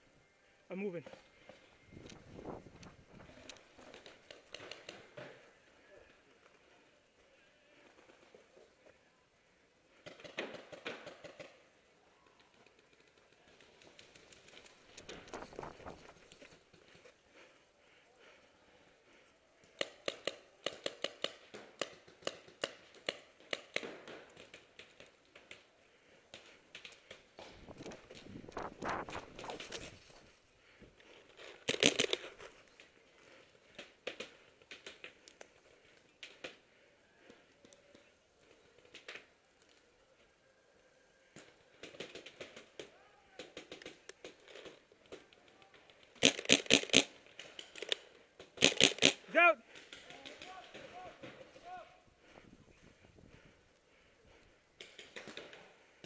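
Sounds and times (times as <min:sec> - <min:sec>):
paintball markers firing: 0:19.6 - 0:25.7, 0:31.4 - 0:32.4, 0:46.0 - 0:50.9
paintball marker shots: 0:46.2 - 0:50.3.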